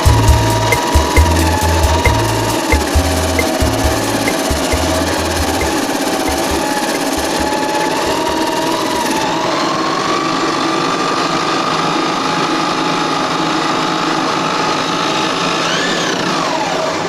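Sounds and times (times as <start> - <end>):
hand drill motor whining: 0.0 - 17.0.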